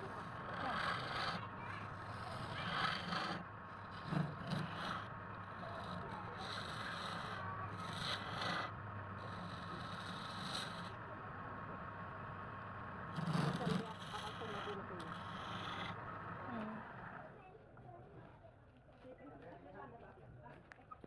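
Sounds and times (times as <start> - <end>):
turning tool scraping wood: 0.0 - 11.0, 12.8 - 16.4
wood lathe humming: 0.0 - 17.2.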